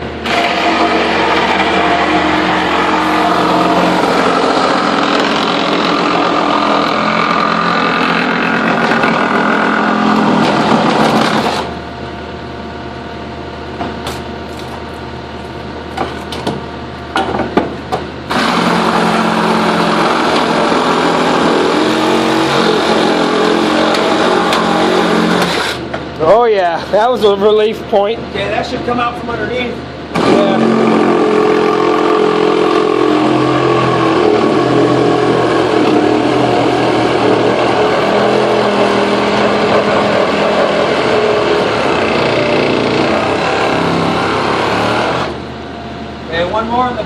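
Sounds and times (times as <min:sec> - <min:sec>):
diesel track loader idling: 0:00.0 - 0:28.2, 0:29.8 - 0:47.0
reciprocating saw cutting: 0:00.2 - 0:11.7, 0:18.3 - 0:25.9, 0:30.2 - 0:45.4.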